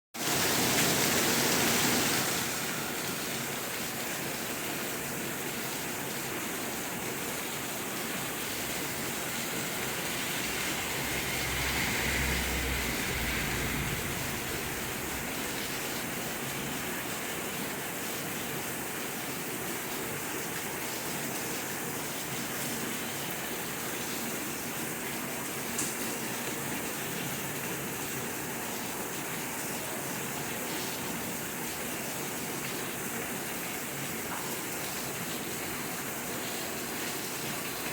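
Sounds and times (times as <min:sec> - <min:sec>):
steady rain: 0:00.2 - 0:37.9
low rumble: 0:07.6 - 0:17.2.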